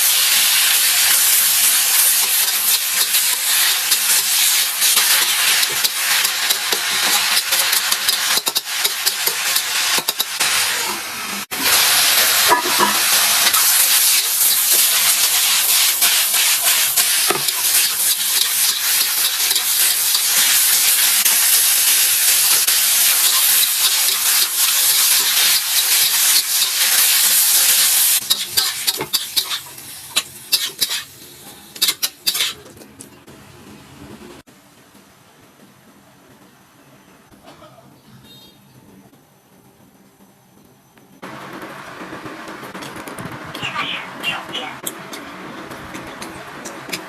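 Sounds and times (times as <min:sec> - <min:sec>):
food sizzling in hot pan: 0:00.0 - 0:32.6
spatula clicking and scraping pan: 0:05.0 - 0:10.4, 0:28.2 - 0:31.1, 0:31.8 - 0:32.6.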